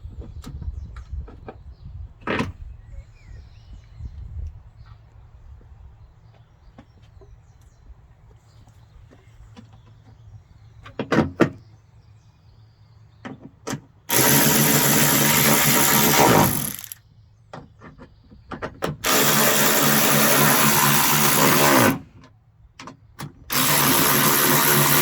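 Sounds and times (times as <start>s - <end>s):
power drill running: 14.1s - 17.0s, 19.0s - 22.0s, 23.5s - 25.0s.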